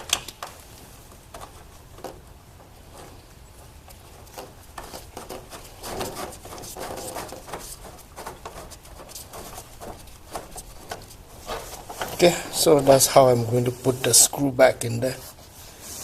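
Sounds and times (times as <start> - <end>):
metal parts clicking and knocking: 0.0 - 0.6.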